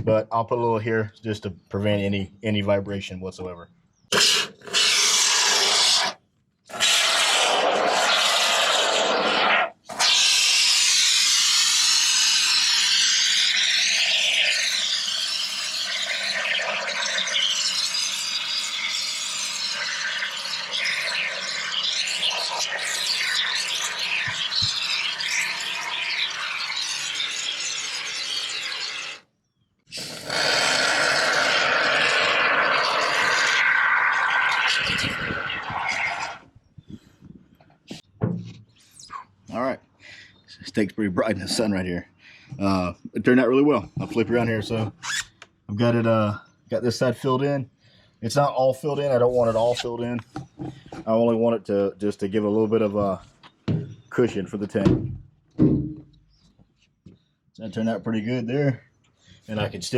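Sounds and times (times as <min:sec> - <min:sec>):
foam spraying from a can: 0:04.1 - 0:29.2, 0:29.9 - 0:36.4.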